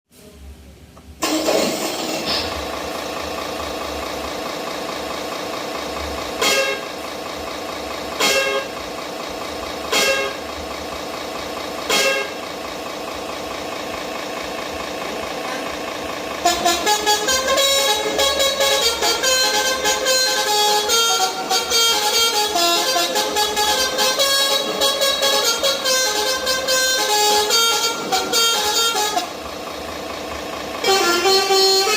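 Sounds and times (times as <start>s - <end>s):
simulated truck engine: 0.4s - 31.9s
musical horn playing a tune: 6.4s - 7.0s, 8.2s - 8.8s, 9.9s - 10.5s, 11.9s - 12.4s, 16.4s - 29.4s, 30.8s - 31.9s
short horn blasts: 6.4s - 7.0s, 8.2s - 8.8s, 9.9s - 10.5s, 11.8s - 12.5s, 16.4s - 29.4s, 30.8s - 31.9s.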